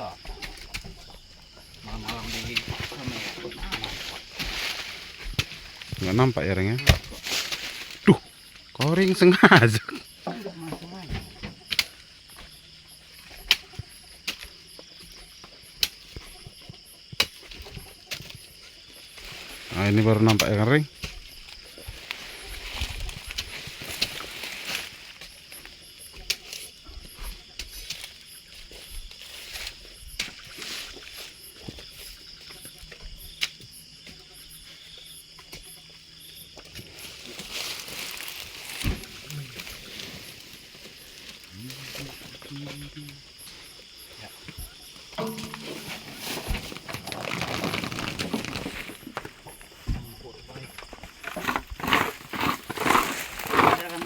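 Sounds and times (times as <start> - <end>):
crickets chirring: 0.0 - 54.0
night insects trilling: 0.0 - 54.0
rustling hiss: 36.9 - 49.9.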